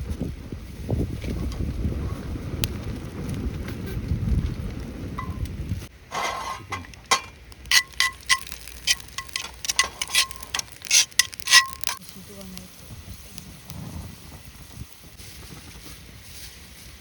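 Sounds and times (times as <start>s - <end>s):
tongs clicking on grill grate: 6.1s - 12.0s
meat sizzling on a grill: 7.4s - 15.4s.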